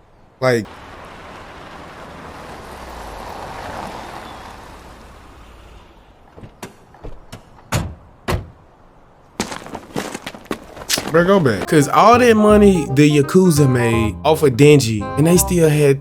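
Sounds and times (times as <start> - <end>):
cars pulling up: 0.7 - 9.0.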